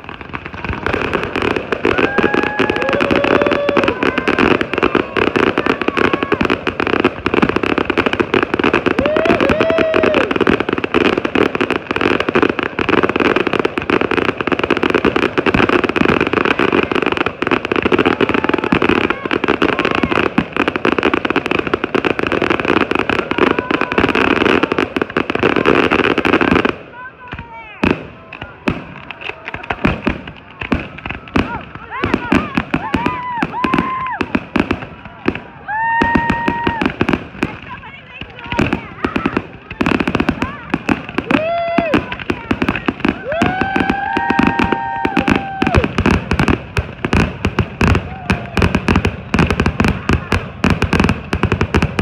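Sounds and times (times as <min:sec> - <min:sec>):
fireworks bangs and crackling: 0:00.0 - 0:52.0.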